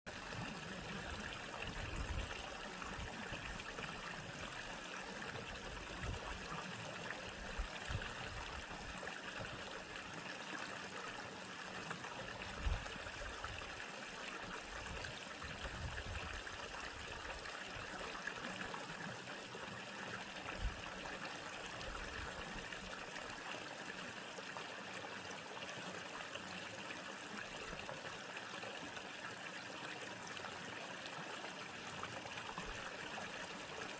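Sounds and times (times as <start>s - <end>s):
stream flowing: 0.1s - 33.9s.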